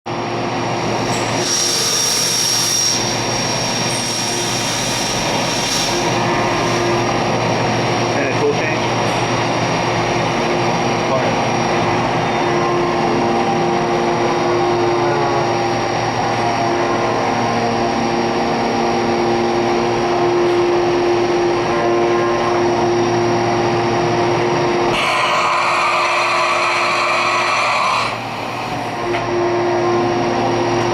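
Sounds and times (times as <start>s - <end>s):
high machine whine: 0.1s - 30.9s
machining center hiss and hum: 0.1s - 30.9s
machine hiss: 0.8s - 7.8s, 24.9s - 29.1s.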